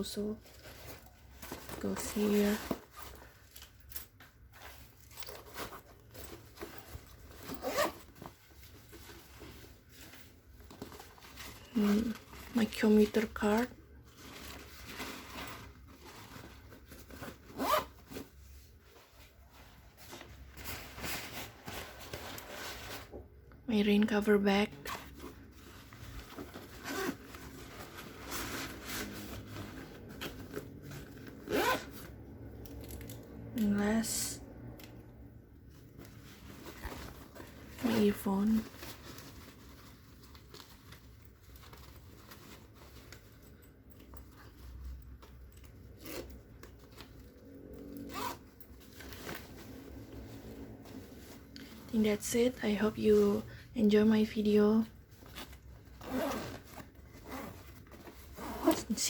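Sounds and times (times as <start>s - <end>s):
fabric rustling: 0.0s - 23.4s, 24.6s - 59.0s
zipper being pulled: 3.9s - 8.4s, 14.4s - 18.3s, 24.7s - 33.7s, 36.0s - 39.3s, 45.6s - 52.0s, 55.2s - 59.0s
backpack zipper pulled: 7.4s - 8.1s, 17.2s - 18.2s, 26.7s - 27.4s, 28.3s - 32.1s, 47.8s - 48.5s, 56.0s - 59.0s.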